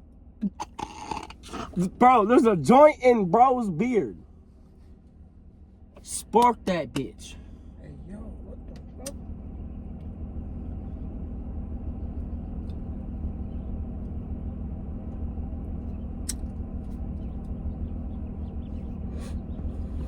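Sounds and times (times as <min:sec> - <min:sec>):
car engine rumble inside cabin: 0:00.0 - 0:20.0.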